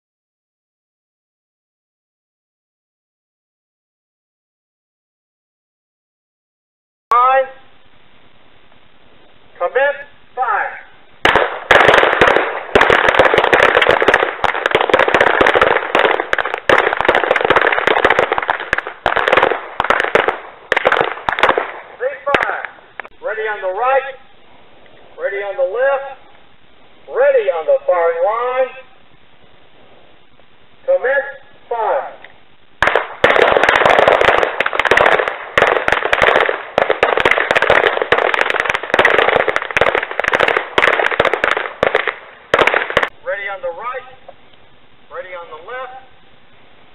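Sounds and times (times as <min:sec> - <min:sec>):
pistol shots echoing: 0:11.2 - 0:22.8, 0:32.8 - 0:43.1.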